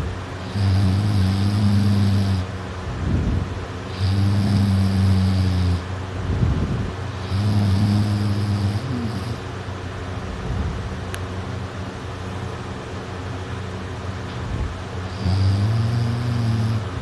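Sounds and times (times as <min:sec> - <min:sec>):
person snoring: 0:00.4 - 0:02.5, 0:03.9 - 0:05.9, 0:07.2 - 0:09.4, 0:15.1 - 0:17.0.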